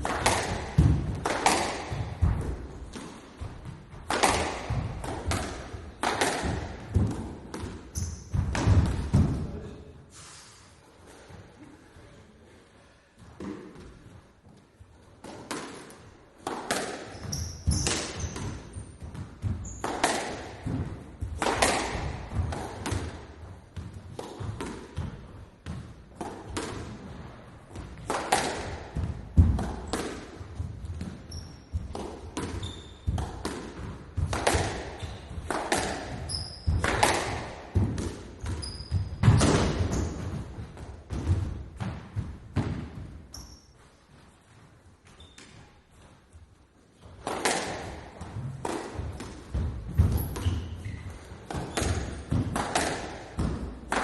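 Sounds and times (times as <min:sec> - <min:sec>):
squash ball hits: 0:00.0 - 0:09.7, 0:13.4 - 0:14.0, 0:15.2 - 0:43.4, 0:47.0 - 0:54.0
shoe squeaks: 0:07.9 - 0:08.4, 0:17.1 - 0:19.9, 0:31.2 - 0:31.8, 0:32.5 - 0:33.2, 0:35.0 - 0:35.4, 0:36.2 - 0:36.8, 0:38.4 - 0:40.3, 0:43.3 - 0:44.0, 0:45.1 - 0:45.8, 0:50.1 - 0:52.2.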